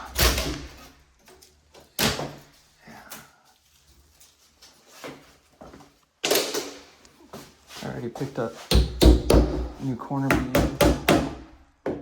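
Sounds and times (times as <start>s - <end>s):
hammer knocking: 8.7s - 12.0s.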